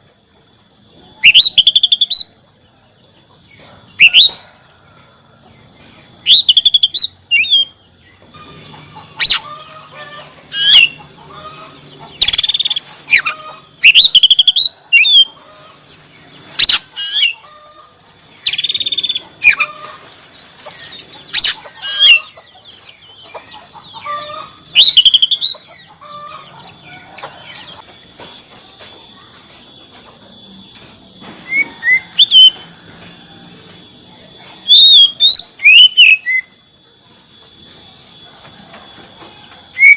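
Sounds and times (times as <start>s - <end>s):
bird harsh rasping buzz: 0.9s - 2.4s, 5.5s - 39.9s
bird twittering: 1.0s - 2.4s, 3.4s - 4.7s, 5.8s - 28.5s, 31.3s - 32.8s, 34.2s - 36.8s, 39.7s - 39.9s
bird whistled chirps: 1.2s - 2.4s, 4.0s - 4.5s, 6.2s - 7.9s, 10.5s - 15.4s, 16.6s - 17.4s, 18.3s - 19.8s, 20.4s - 27.8s, 31.4s - 32.8s, 34.6s - 36.6s.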